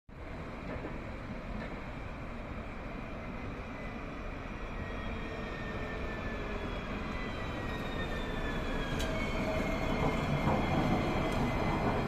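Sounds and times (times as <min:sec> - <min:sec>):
tram rumbling: 0:00.1 - 0:12.0.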